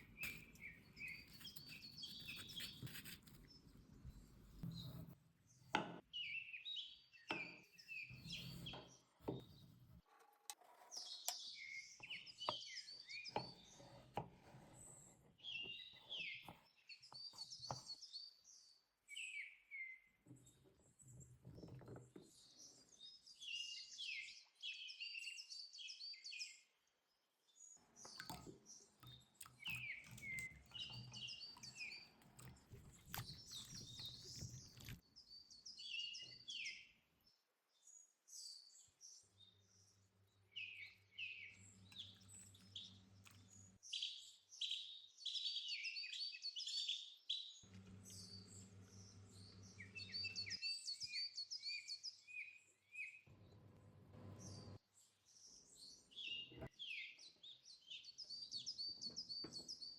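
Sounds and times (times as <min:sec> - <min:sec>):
birds chirping and singing: 0:27.6 - 0:36.9, 0:37.9 - 0:53.2.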